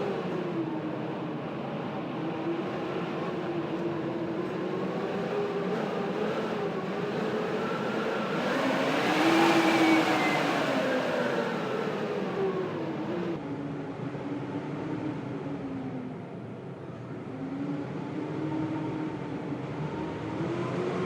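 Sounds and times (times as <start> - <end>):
blizzard wind howling: 0.0 - 21.0.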